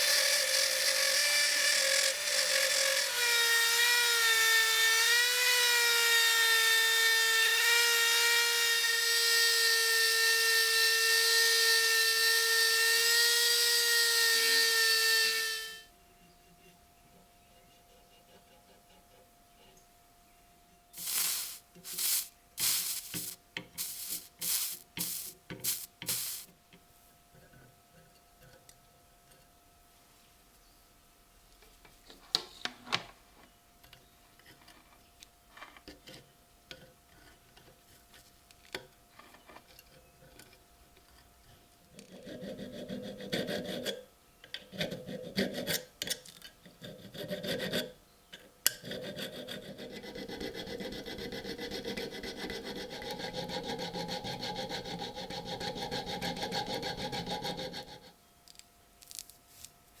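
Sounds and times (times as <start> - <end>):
rasping rub on knife: 21.0 - 26.5, 42.1 - 44.0, 48.8 - 58.2.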